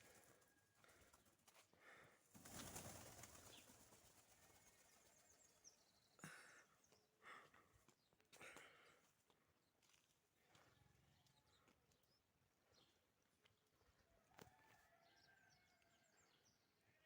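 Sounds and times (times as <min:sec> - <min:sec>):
pigeon wings flapping: 0:02.3 - 0:04.6.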